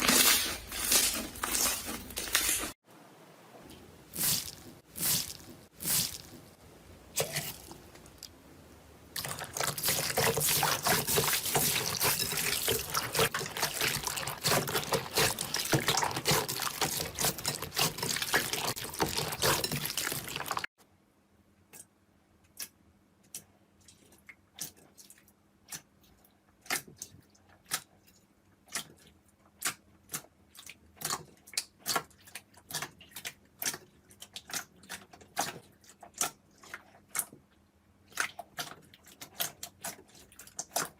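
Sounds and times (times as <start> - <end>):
slime squelching and crackling: 0.0 - 2.8, 9.1 - 20.7.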